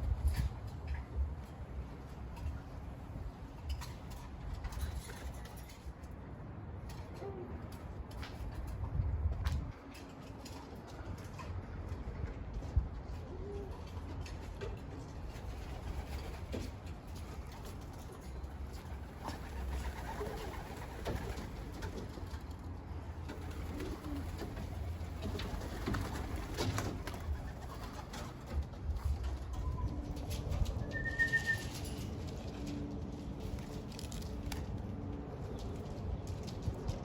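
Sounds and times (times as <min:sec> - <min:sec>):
pigeons cooing: 0:23.4 - 0:28.2.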